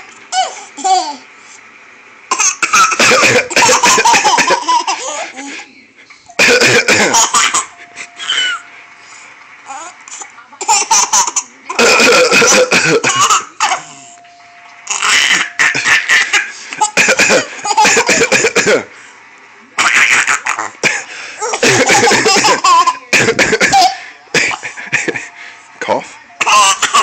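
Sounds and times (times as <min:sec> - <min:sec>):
baby laughing: 0:00.3 - 0:01.3, 0:02.3 - 0:05.6, 0:14.9 - 0:18.5, 0:26.4 - 0:27.0
person fake coughing: 0:02.3 - 0:05.1, 0:06.4 - 0:08.6, 0:10.6 - 0:13.9, 0:14.9 - 0:18.9, 0:19.8 - 0:25.2.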